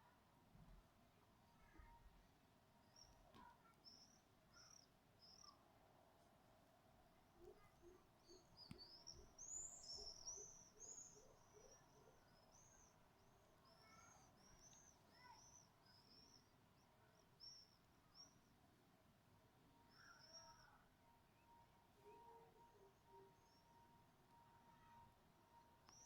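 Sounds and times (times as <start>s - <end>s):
bird chirping: 2.8s - 5.6s, 7.4s - 18.5s, 19.8s - 26.0s.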